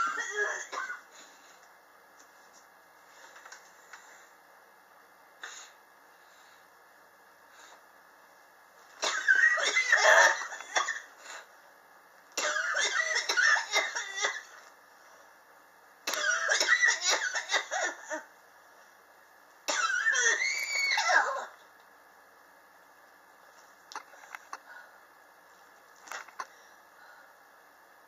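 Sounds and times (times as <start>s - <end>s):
person coughing: 0.0s - 1.1s, 9.0s - 11.1s, 12.4s - 14.6s.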